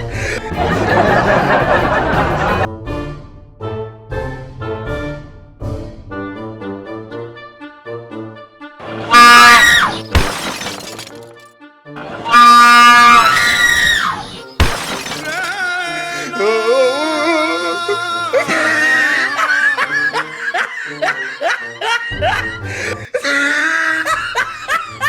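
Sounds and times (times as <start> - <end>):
background music: 0.0 - 25.0
train horn blasts: 9.0 - 10.0, 12.3 - 13.4
sharp crash: 9.9 - 11.4, 14.6 - 15.6.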